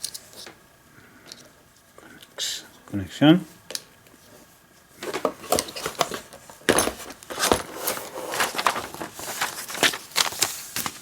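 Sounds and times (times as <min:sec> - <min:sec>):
rustling: 0:04.2 - 0:11.0.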